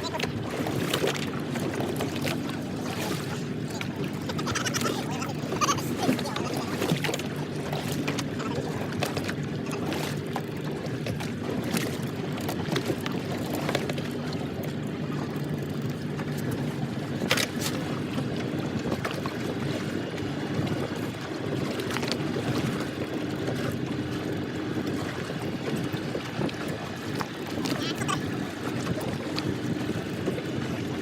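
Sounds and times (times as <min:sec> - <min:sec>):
boat engine running: 0:00.0 - 0:31.0
wind on microphone: 0:18.5 - 0:31.0.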